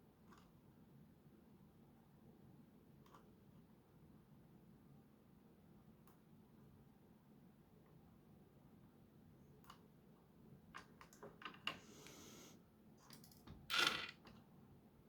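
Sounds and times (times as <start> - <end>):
plastic parts clicking: 13.1 - 14.2.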